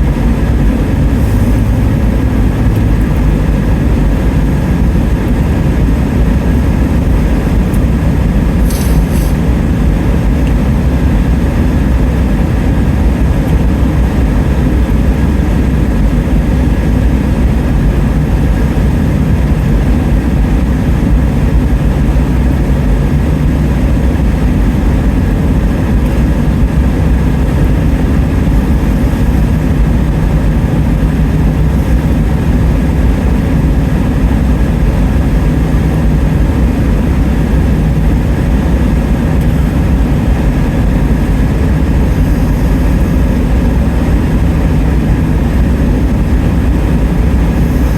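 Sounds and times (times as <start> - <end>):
vehicle engine rumbling: 0.0 - 47.9
brief high hiss: 8.6 - 9.4.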